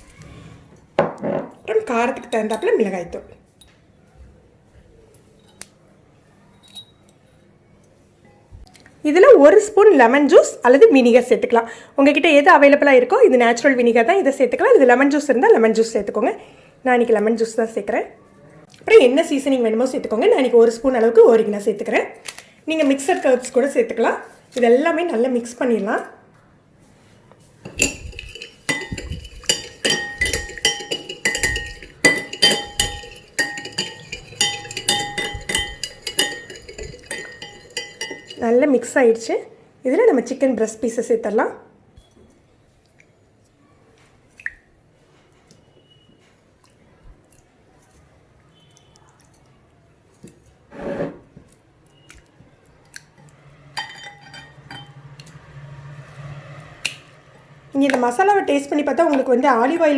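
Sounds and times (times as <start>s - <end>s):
spoon clinking against bowl: 2.2s - 2.8s, 27.6s - 38.4s, 53.8s - 55.1s.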